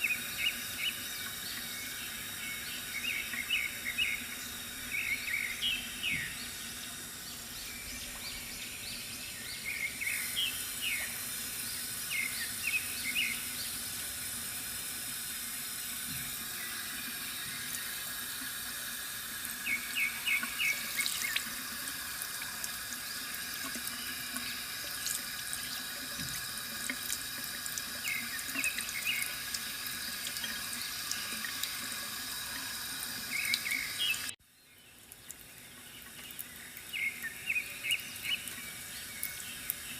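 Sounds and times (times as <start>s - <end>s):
small birds chirping: 0.0s - 13.9s, 19.5s - 21.6s, 28.0s - 31.7s, 33.2s - 39.9s
water trickling from fountain: 0.0s - 39.9s.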